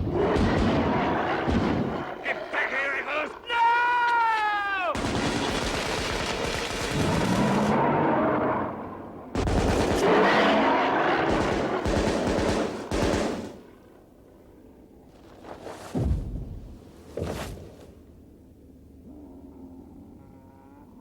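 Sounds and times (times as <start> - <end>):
rifle fire volleys: 0.0 - 2.3, 4.9 - 8.4, 9.3 - 13.7.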